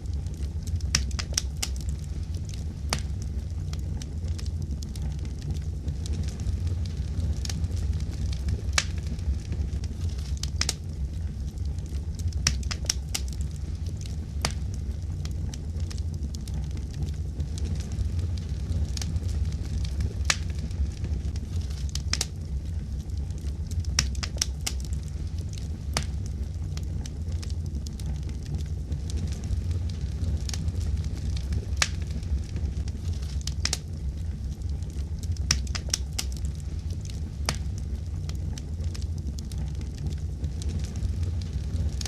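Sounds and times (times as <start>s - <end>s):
fire crackling and popping: 0.0s - 42.0s.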